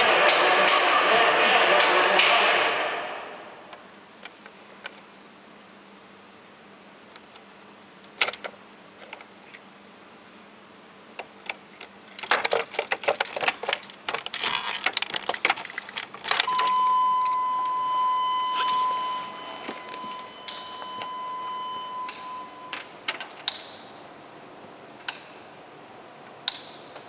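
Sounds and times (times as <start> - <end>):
steady high tone: 0.0 - 3.8, 16.5 - 22.9.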